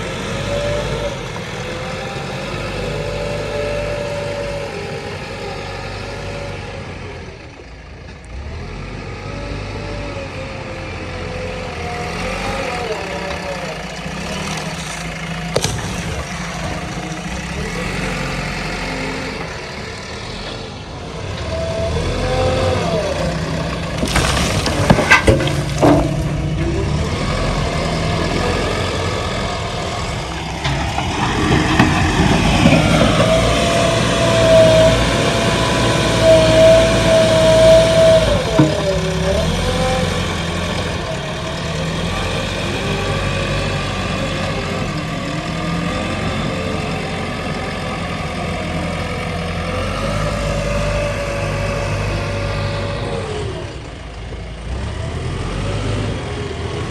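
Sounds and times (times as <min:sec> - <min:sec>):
diesel engine running: 0:00.0 - 0:56.9
loud metal clanks: 0:23.6 - 0:33.4, 0:38.4 - 0:39.6.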